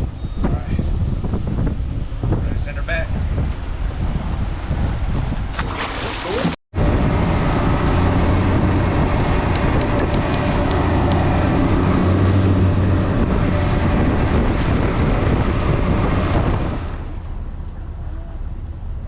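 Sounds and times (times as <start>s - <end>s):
faint ticks: 9.0s - 11.5s.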